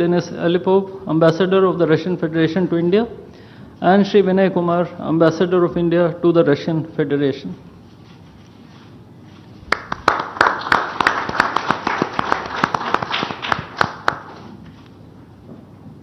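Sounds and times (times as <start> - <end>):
audience applauding: 9.7 - 14.5.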